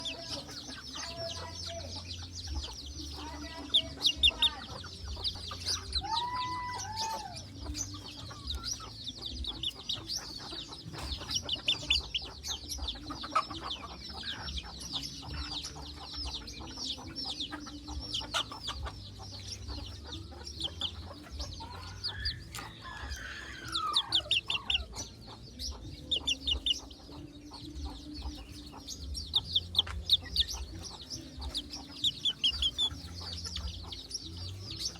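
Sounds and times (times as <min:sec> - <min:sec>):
rooster clucking and calling: 0:19.8 - 0:27.4.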